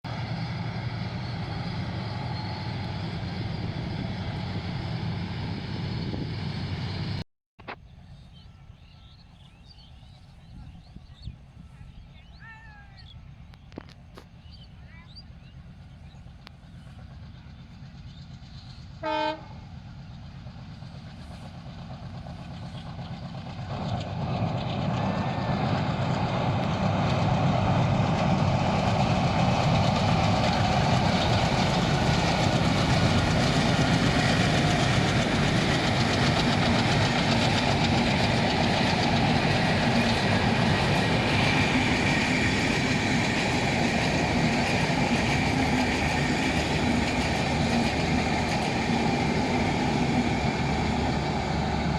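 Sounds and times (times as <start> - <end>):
train rumbling past: 0.1 - 7.2, 7.9 - 51.9
train horn blast: 19.0 - 19.7.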